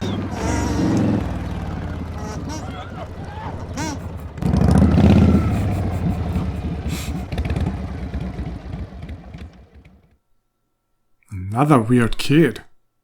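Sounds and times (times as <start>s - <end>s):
motorcycle engine running: 0.0s - 10.2s.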